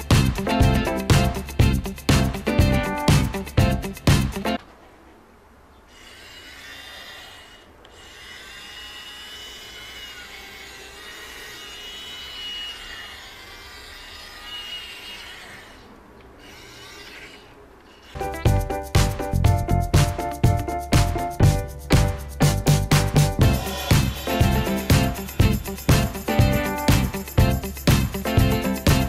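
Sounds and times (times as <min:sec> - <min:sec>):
toy drill whirring: 0:05.9 - 0:18.2.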